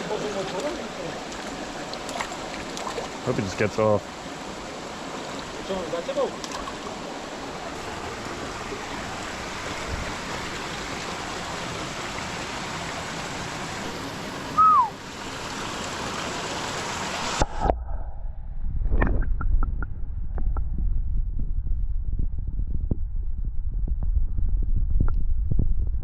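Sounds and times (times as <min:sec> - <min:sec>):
mountain stream rushing: 0:00.0 - 0:17.5
short falling whistle: 0:14.6 - 0:15.0
low rumble: 0:17.4 - 0:26.0.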